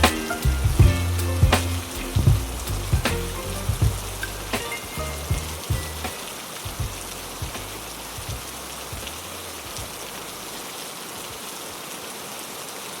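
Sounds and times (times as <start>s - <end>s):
low thumps: 0.0s - 10.2s
steady rain falling: 0.0s - 13.0s.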